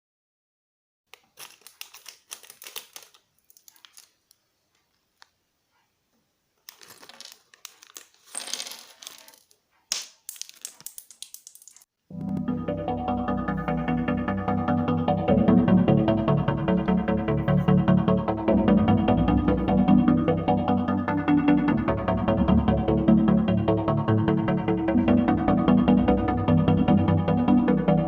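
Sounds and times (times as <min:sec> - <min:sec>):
plastic packaging crinkling: 0:01.1 - 0:05.3, 0:06.6 - 0:09.6, 0:10.2 - 0:11.9
plastic toy bricks clattering: 0:06.6 - 0:09.6, 0:10.2 - 0:11.9
music: 0:12.1 - 0:28.0.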